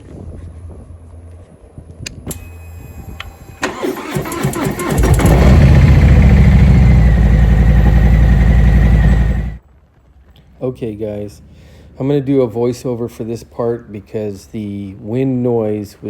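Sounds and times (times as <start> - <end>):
clicks: 2.0 - 5.1
motorcycle starter cranking: 2.1 - 9.6
motorcycle engine running: 3.1 - 9.6.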